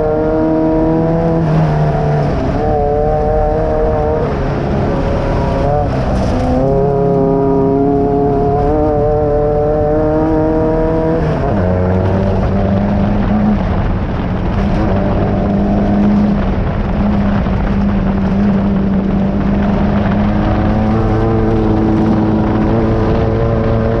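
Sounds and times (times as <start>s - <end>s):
race car engine under load: 0.0s - 24.0s
rough road noise: 0.0s - 24.0s.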